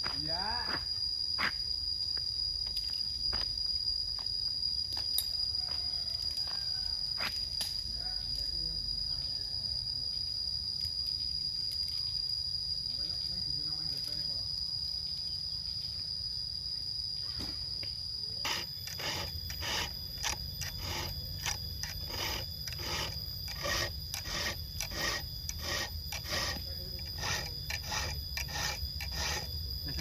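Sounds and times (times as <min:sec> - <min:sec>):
high insect drone: 0:00.0 - 0:30.0
rasping strokes: 0:18.4 - 0:30.0.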